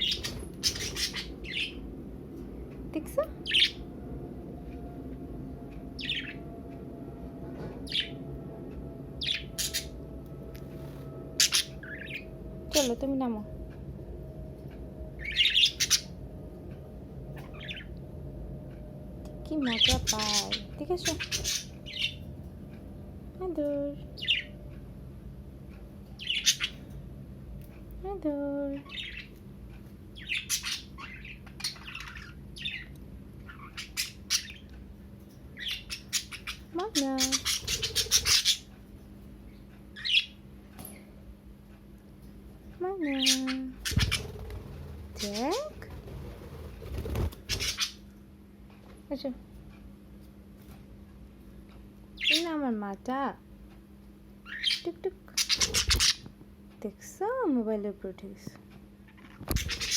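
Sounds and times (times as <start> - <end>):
budgerigars chirping: 0.0 - 1.8, 9.2 - 9.9, 11.4 - 12.2, 15.2 - 16.2, 19.7 - 22.2, 26.2 - 26.8, 30.2 - 32.9, 33.5 - 34.7, 35.6 - 38.7, 43.1 - 44.5, 47.0 - 48.0, 54.4 - 56.2, 59.5 - 59.9.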